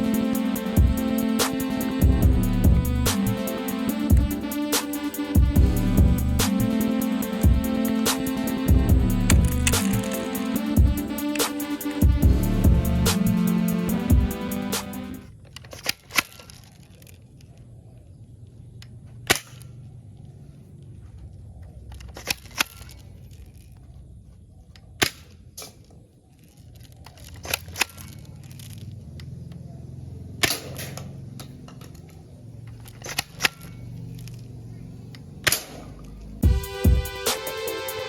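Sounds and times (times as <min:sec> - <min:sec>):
toy gun cocking and firing: 0:09.3 - 0:10.5, 0:15.3 - 0:17.5, 0:19.2 - 0:19.8, 0:21.9 - 0:23.2, 0:26.6 - 0:29.4, 0:30.4 - 0:34.4, 0:35.1 - 0:36.1.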